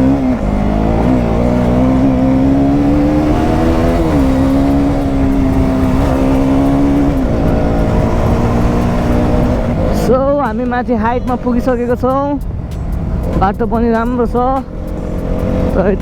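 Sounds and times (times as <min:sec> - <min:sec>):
motorcycle engine under load: 0:00.0 - 0:16.0
wind rumble on microphone: 0:02.0 - 0:14.6.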